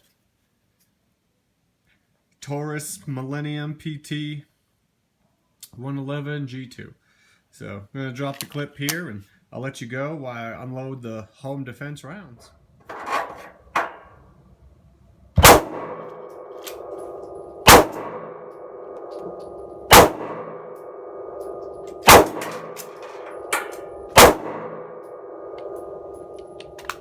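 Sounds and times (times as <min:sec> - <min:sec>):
loud metallic clangs ringing: 0:13.0 - 0:14.2, 0:15.4 - 0:27.0.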